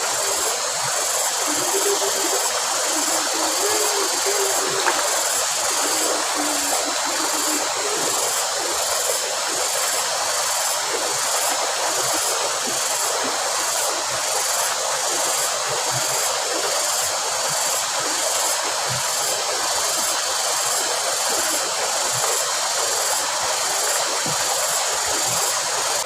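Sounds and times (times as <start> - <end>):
faint high pulsing sound: 0.0 - 16.7
water rushing through channel: 0.0 - 26.0.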